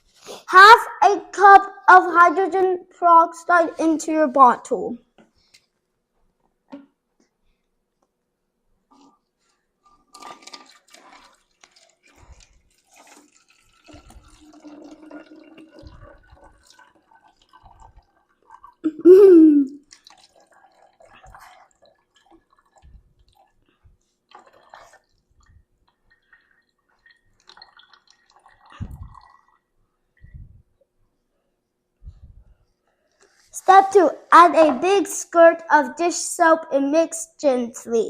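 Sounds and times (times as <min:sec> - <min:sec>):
liquid pouring and dripping: 0:09.8 - 0:19.0, 0:19.8 - 0:29.7.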